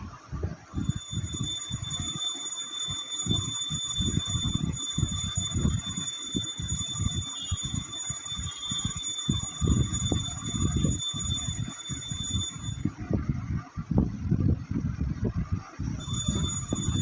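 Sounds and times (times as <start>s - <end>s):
high-pitched electrical whine: 0.0s - 17.0s.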